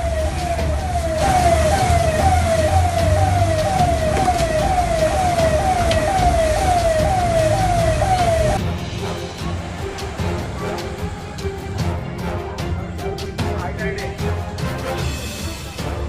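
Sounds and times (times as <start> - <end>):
electronic siren falling tone: 0.0 - 8.6
steady low rumble: 0.0 - 14.5.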